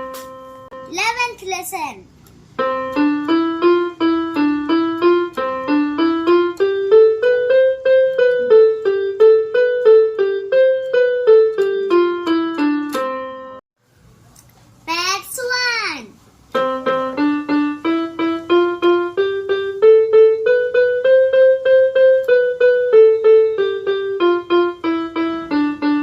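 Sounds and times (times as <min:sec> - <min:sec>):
electronic keyboard piano notes: 0:00.0 - 0:01.2, 0:02.5 - 0:13.6, 0:16.5 - 0:26.0.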